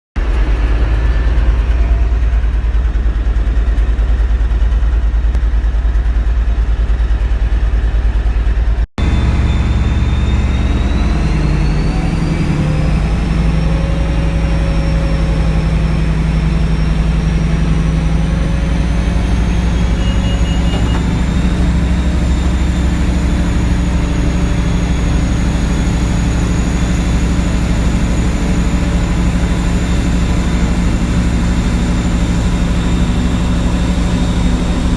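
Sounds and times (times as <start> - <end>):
diesel engine drone: 0.2 - 34.9
high-pitched whine: 8.2 - 34.9.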